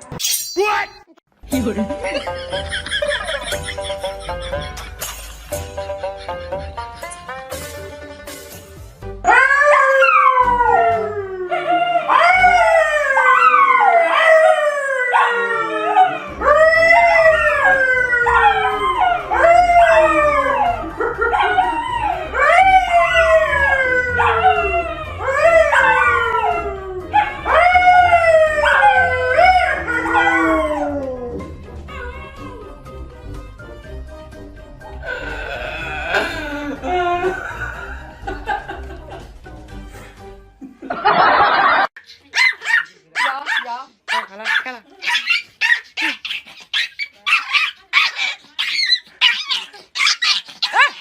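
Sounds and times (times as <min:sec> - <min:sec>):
dog howling: 0:09.3 - 0:32.8.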